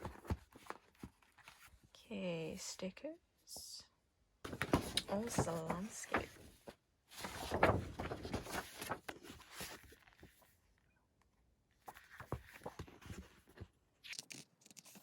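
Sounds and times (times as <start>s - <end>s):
paper rustling: 4.5s - 10.5s, 11.9s - 15.0s.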